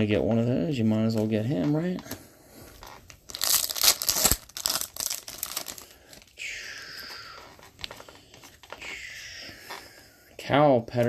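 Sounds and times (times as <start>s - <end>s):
foil wrapper tearing and crinkling: 3.2s - 6.3s.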